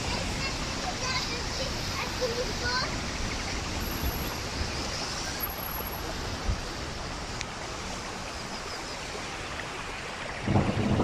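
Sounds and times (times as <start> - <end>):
rain falling: 0.0 - 11.0
wind buffeting microphone: 9.0 - 11.0.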